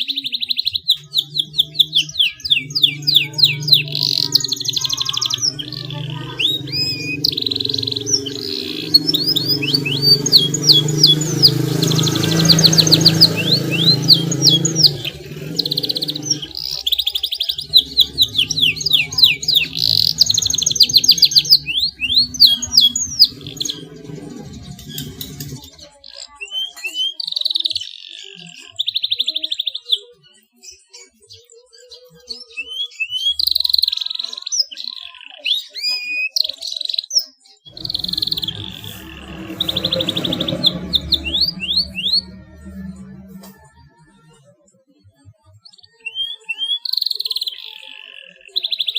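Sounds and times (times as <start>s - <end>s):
canary singing: 0.0s - 44.6s, 45.8s - 48.9s
low droning background: 0.8s - 25.9s, 37.7s - 44.4s.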